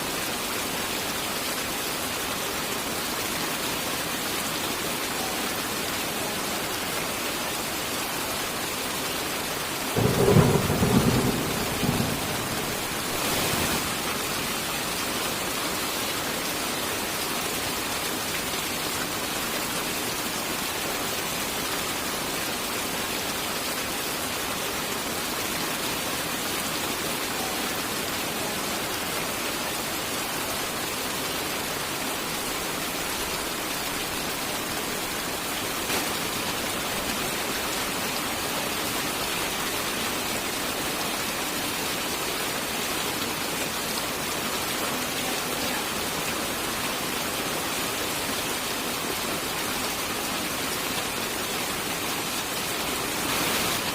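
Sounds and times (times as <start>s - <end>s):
heavy rain hissing: 0.0s - 53.9s
thunderclap: 10.0s - 14.0s.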